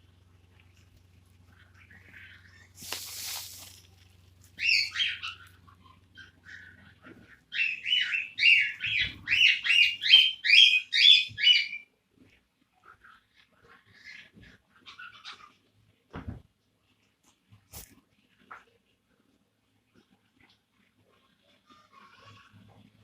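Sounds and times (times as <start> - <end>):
short hiss: 2.8 - 3.9
cockatiel chirping: 4.6 - 11.9.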